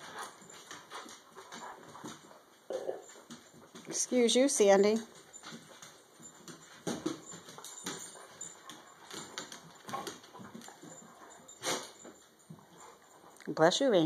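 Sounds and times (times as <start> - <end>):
dogs grunting and snuffling: 0.0 - 3.9, 7.6 - 13.5.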